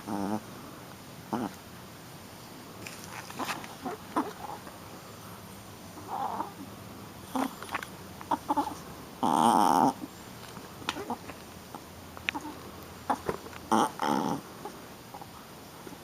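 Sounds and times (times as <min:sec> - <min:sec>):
puppy growls and yips: 0:03.4 - 0:04.7, 0:06.0 - 0:06.6, 0:07.3 - 0:07.6, 0:08.3 - 0:10.1, 0:10.9 - 0:11.2.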